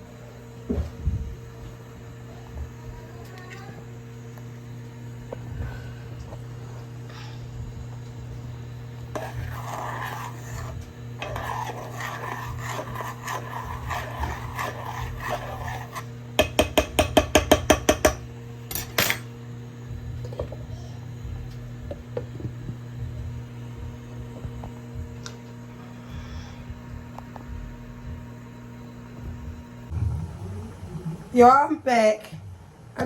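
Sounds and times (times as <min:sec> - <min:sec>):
electrical hum: 0:00.0 - 0:33.0.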